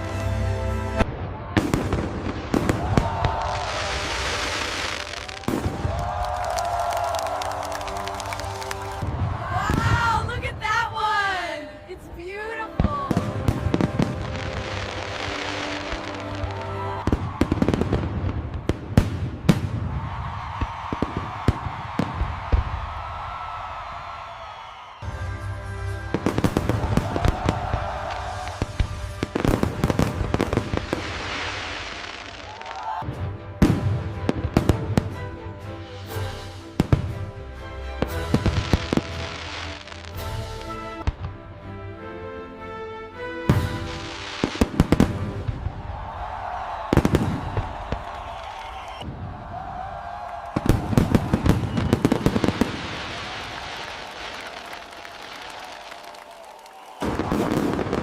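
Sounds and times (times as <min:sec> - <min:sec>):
fireworks bangs and crackles: 0:00.0 - 0:11.3, 0:12.6 - 0:37.3, 0:37.9 - 0:41.4, 0:43.5 - 0:58.0
background music: 0:00.0 - 0:19.3, 0:25.0 - 0:48.4
fireworks hissing: 0:02.2 - 0:05.8.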